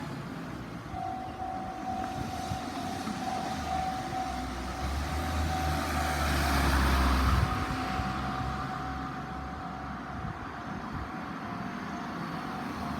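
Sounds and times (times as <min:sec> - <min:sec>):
level crossing warning alarm: 0:00.9 - 0:10.2.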